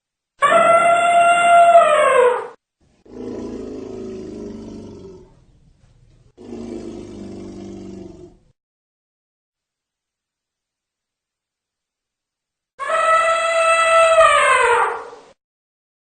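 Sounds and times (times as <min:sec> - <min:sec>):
elephant low calls: 0:06.3 - 0:08.5.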